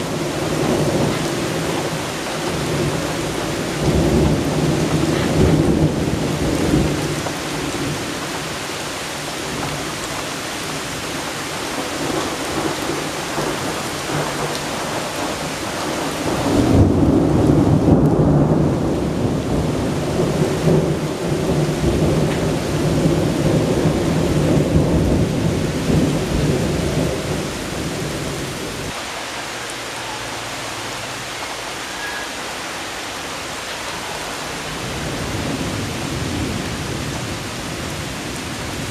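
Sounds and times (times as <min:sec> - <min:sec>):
thunder rumbling: 0:00.0 - 0:08.7, 0:10.7 - 0:29.0
heavy rain: 0:00.0 - 0:38.9.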